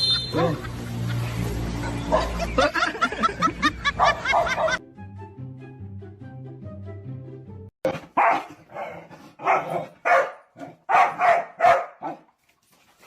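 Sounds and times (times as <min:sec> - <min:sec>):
background music: 0:00.4 - 0:07.7
dog barking: 0:02.1 - 0:02.4, 0:04.0 - 0:04.8, 0:07.9 - 0:12.3.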